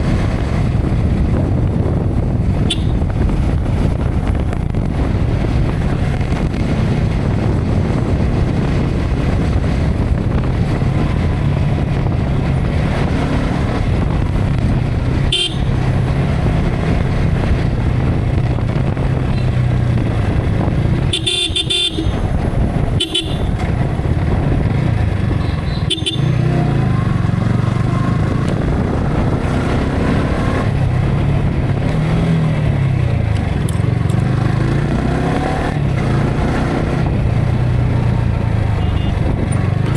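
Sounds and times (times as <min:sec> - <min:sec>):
motorcycle engine running: 0:00.0 - 0:39.9
wind noise on microphone: 0:00.0 - 0:39.9
short horn toots: 0:15.3 - 0:15.7, 0:21.1 - 0:23.6.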